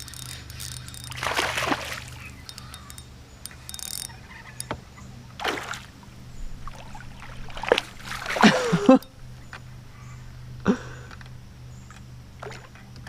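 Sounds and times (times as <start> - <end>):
fish splashing in water: 0.0 - 4.2, 5.4 - 6.0, 6.6 - 9.0
light clicks: 0.0 - 4.8.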